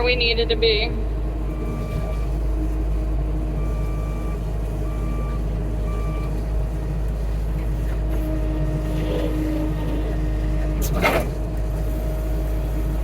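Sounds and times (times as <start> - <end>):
skid steer engine running: 0.0 - 13.0
backup alarm beeping: 3.6 - 6.3.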